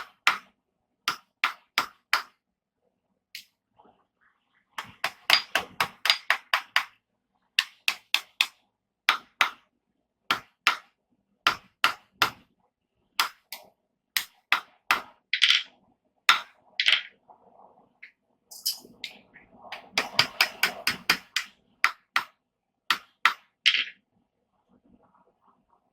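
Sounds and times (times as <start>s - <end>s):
hammer striking steel on anvil: 18.5s - 18.9s.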